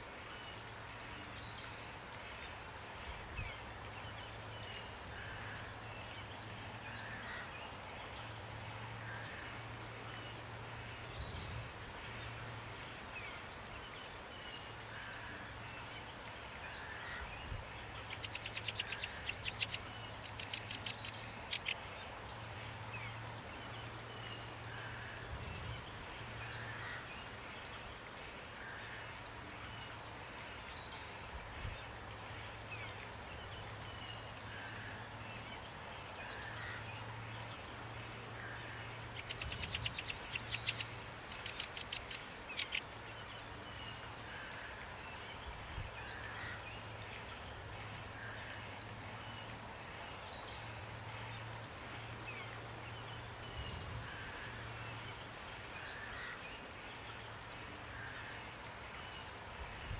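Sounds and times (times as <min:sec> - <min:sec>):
rain hiss: 0:00.0 - 0:59.9
songbirds singing: 0:00.0 - 0:59.9.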